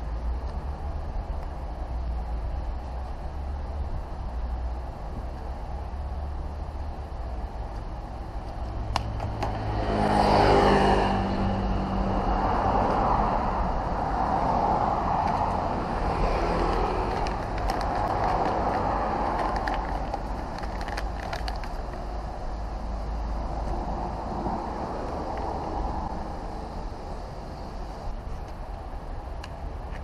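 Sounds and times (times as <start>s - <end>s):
road noise: 0.0s - 30.0s
vehicle engine revving: 8.7s - 20.8s.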